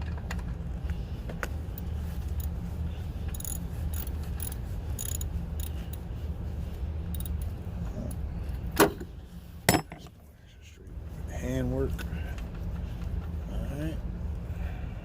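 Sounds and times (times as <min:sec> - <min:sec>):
steady low rumble: 0:00.0 - 0:15.0
hand tools clicking on metal: 0:03.3 - 0:06.0, 0:07.1 - 0:07.4.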